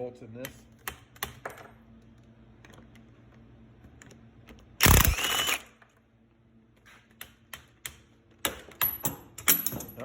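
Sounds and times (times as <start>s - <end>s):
power tool burst with whine: 4.8s - 5.7s.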